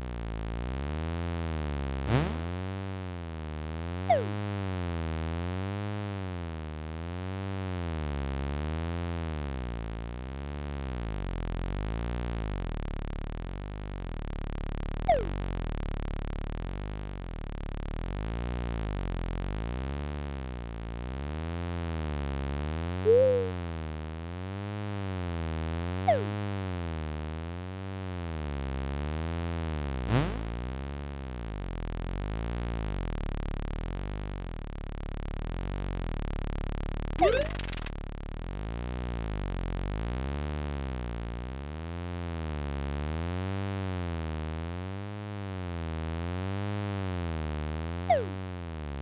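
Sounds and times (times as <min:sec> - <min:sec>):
rising zip sound: 0:02.1 - 0:02.7, 0:04.1 - 0:04.4, 0:15.1 - 0:15.4, 0:23.0 - 0:23.7, 0:26.1 - 0:26.4, 0:30.1 - 0:30.7, 0:37.2 - 0:37.9, 0:48.1 - 0:48.6
cartoon chirp: 0:04.1 - 0:04.4, 0:15.1 - 0:15.4, 0:23.0 - 0:23.7, 0:26.1 - 0:26.4, 0:37.2 - 0:37.9, 0:48.1 - 0:48.4
synth drone with wobble: 0:04.1 - 0:04.6, 0:15.0 - 0:15.6, 0:23.0 - 0:23.7, 0:26.1 - 0:26.6, 0:37.2 - 0:37.9, 0:47.9 - 0:49.0
falling whistles: 0:15.1 - 0:15.4, 0:23.1 - 0:23.6, 0:26.1 - 0:26.4, 0:48.1 - 0:48.4.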